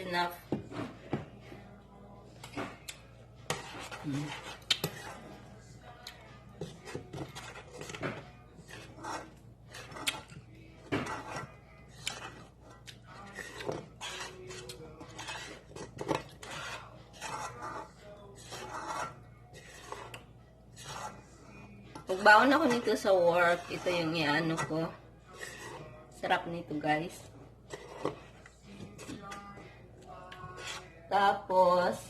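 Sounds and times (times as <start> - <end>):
utensil scraping a pan: 3.4 - 5.6, 6.5 - 31.9.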